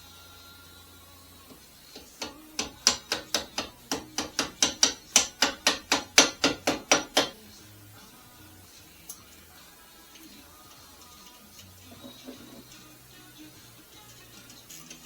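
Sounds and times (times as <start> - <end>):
hammer tapping rapidly: 2.0 - 7.4.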